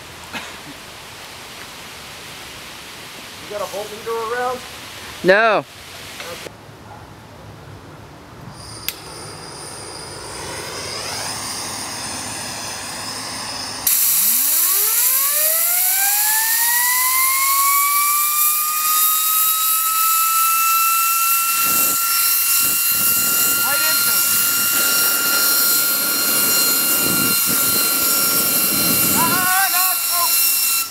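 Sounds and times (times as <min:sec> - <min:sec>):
blower rushing air with whine: 0:08.4 - 0:30.9.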